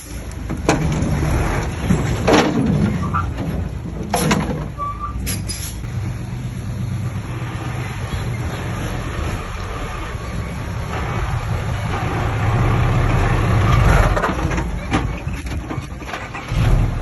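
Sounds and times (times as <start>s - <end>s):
heavy diesel engine running: 0.0s - 17.0s
sharp metallic clanks: 4.0s - 5.9s.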